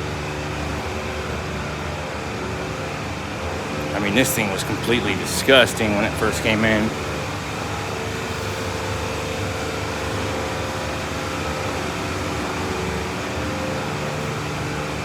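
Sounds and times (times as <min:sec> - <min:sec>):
steady mechanical drone: 0:00.0 - 0:15.0
faint held hum: 0:03.8 - 0:08.6.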